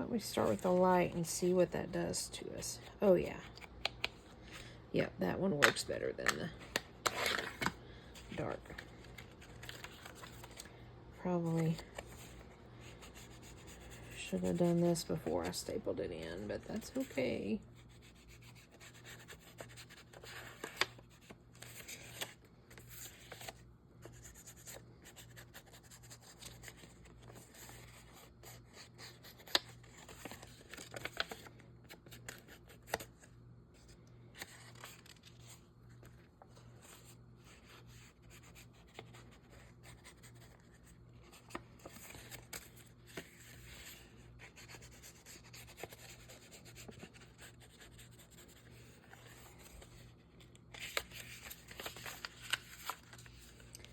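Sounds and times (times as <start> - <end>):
rubbing and scratching on paper: 11.4 - 31.4, 36.6 - 53.9.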